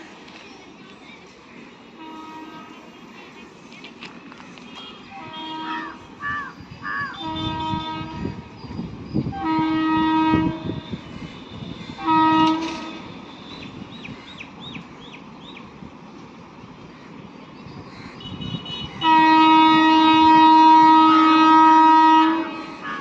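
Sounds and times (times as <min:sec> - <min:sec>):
train rumble and clatter: 0:00.0 - 0:23.0
train horn blasts: 0:02.0 - 0:02.9, 0:04.8 - 0:06.2, 0:07.2 - 0:08.6, 0:09.3 - 0:13.7, 0:18.3 - 0:23.0.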